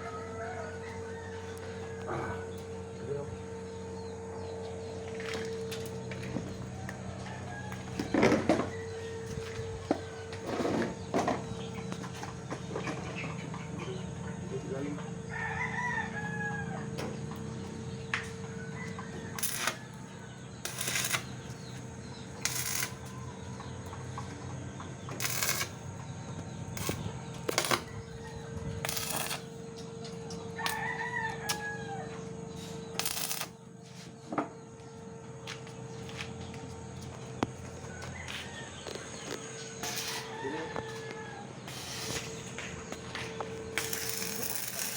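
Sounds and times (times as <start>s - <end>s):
rooster crowing: 0.0s - 2.6s, 6.4s - 10.5s, 15.1s - 17.0s, 18.1s - 21.2s, 30.3s - 32.3s, 37.6s - 44.9s
steady low hum: 0.0s - 44.9s.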